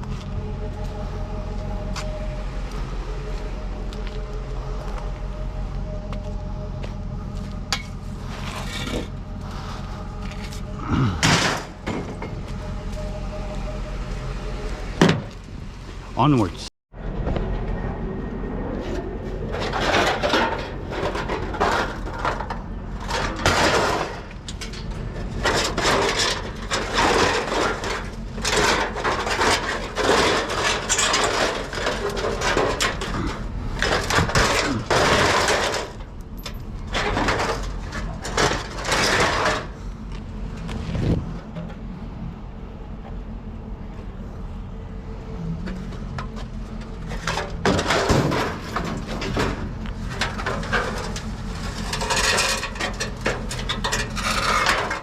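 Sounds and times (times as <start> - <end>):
vehicle engine and road hum: 0.0 - 55.0
scrap metal rattling: 7.7 - 13.3, 19.4 - 41.8, 45.4 - 55.0.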